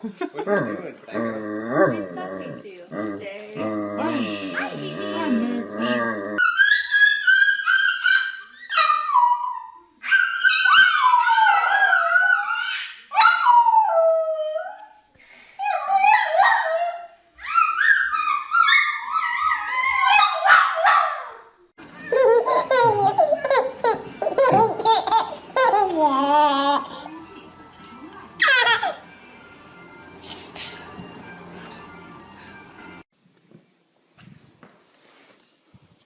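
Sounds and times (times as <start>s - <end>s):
lower wavering voice: 3.6s - 6.4s
dog whining and howling: 3.6s - 21.4s.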